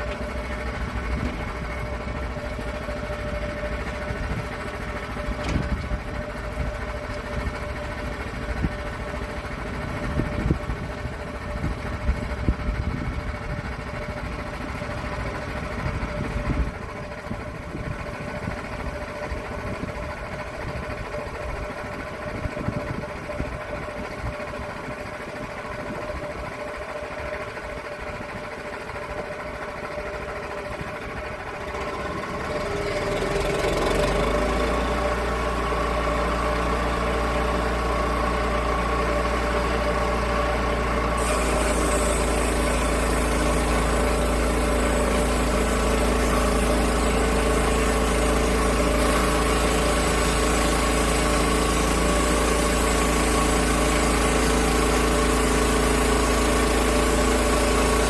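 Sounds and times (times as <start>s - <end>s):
sawmill engine running: 0.0s - 58.0s
saw hissing through log: 39.8s - 58.0s.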